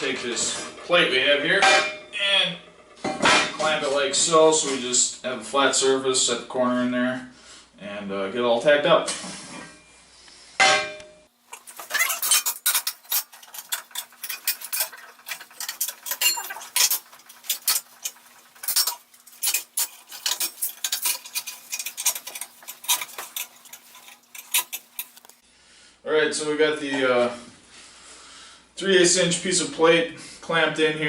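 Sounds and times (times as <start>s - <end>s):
steel pieces clinking and clanking: 11.5s - 25.4s.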